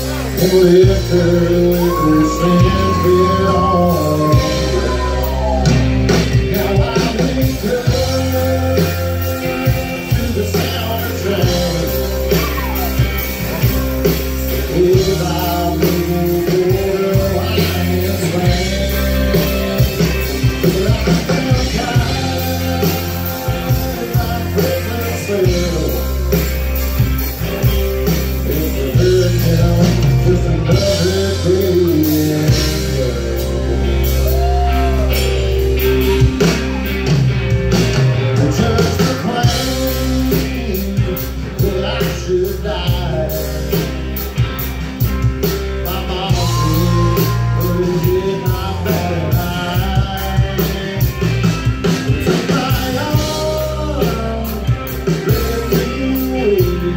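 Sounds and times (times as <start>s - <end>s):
live country band music: 0.0s - 56.9s.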